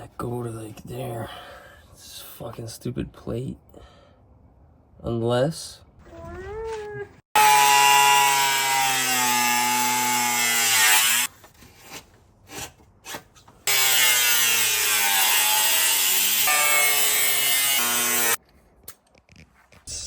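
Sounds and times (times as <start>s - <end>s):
handheld power tool running: 7.4s - 11.3s, 13.7s - 18.4s.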